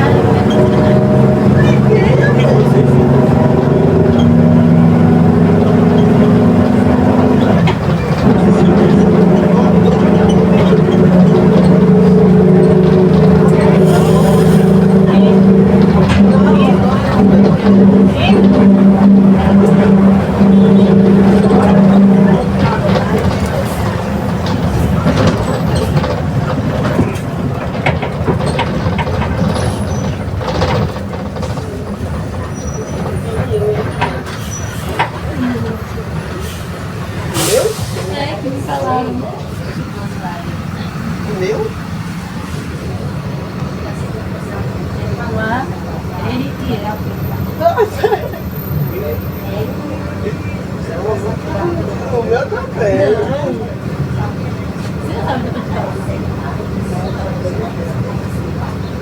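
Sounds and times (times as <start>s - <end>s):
bus engine droning: 0.0s - 59.0s
growling differential: 0.0s - 59.0s
clicks and rattles: 15.4s - 35.2s.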